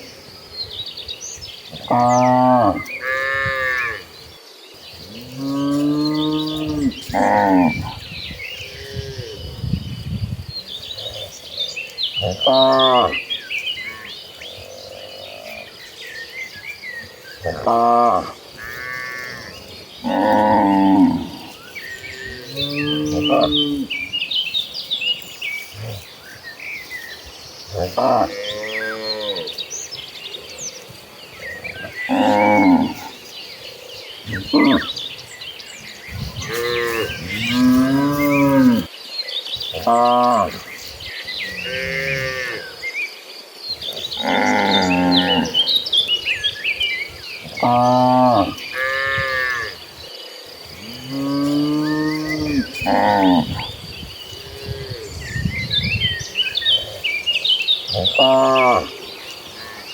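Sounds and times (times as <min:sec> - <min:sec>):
small birds chirping: 0:00.0 - 0:59.9.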